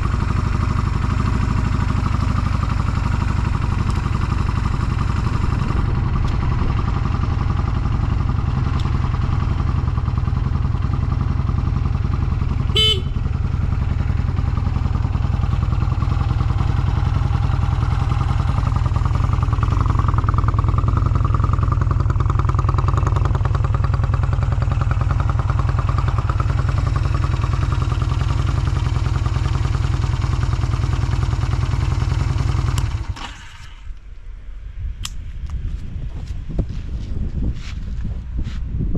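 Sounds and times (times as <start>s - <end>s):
motorcycle engine idling: 0.0s - 33.4s
sharp click: 35.0s - 35.6s.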